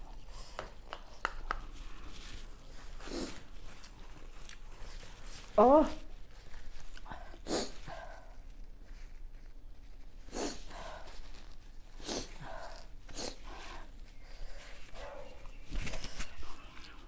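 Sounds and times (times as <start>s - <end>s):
person sniffling: 7.1s - 8.3s.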